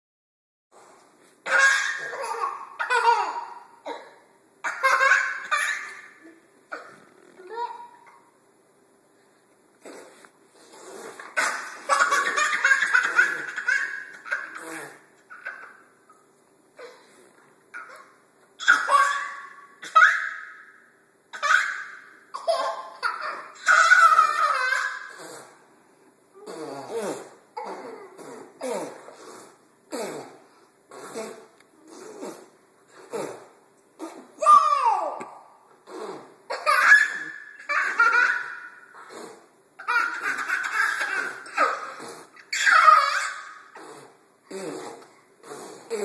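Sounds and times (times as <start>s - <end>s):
children laughing: 4.6s - 7.0s, 11.3s - 15.9s, 21.4s - 25.2s, 36.5s - 38.9s, 39.8s - 43.7s.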